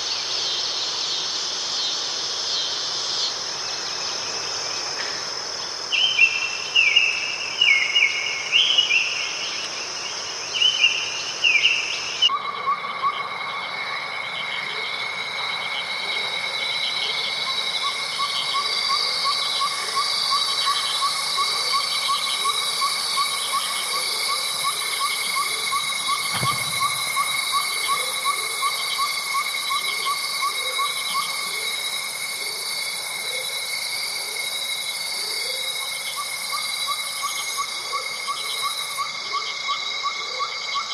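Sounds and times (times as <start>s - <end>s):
insect chorus: 0.0s - 40.9s
insect trills: 0.0s - 40.9s
falling bird calls: 25.2s - 29.1s
low thump: 26.3s - 27.3s.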